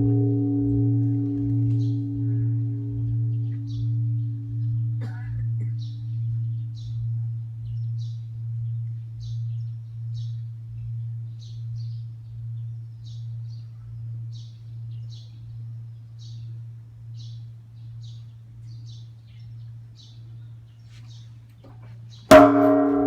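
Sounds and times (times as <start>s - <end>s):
temple bell humming: 0.0s - 16.4s, 22.3s - 23.0s
birds chirping: 0.0s - 22.8s.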